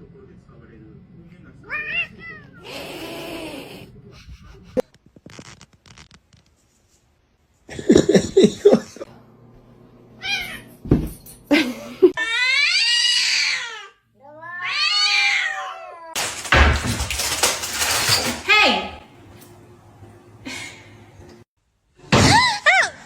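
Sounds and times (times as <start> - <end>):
cat meowing: 1.7 - 2.6, 12.2 - 16.2.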